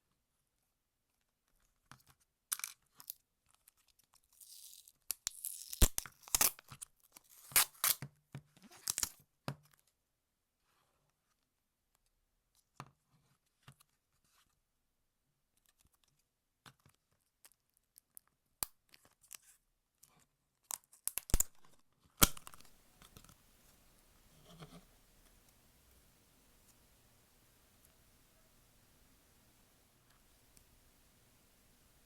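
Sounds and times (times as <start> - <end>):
slime crackling and popping: 5.1 - 6.6, 22.2 - 22.7
sharp loud slime pop: 22.2 - 22.6.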